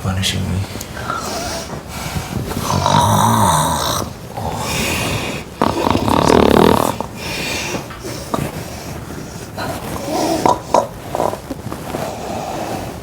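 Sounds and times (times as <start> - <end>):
quiet breathing: 0.6 - 13.0
woman snoring: 2.5 - 11.4.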